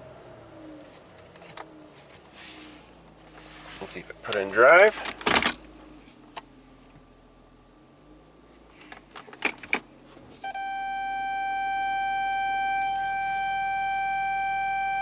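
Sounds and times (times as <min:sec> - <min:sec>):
long held musical note: 0:10.5 - 0:15.0.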